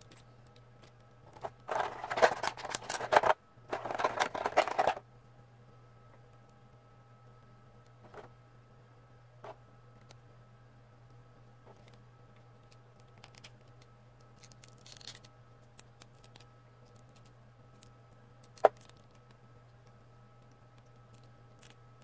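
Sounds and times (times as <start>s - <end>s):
low electrical hum: 0.0s - 22.0s
handling rustle: 1.3s - 5.0s.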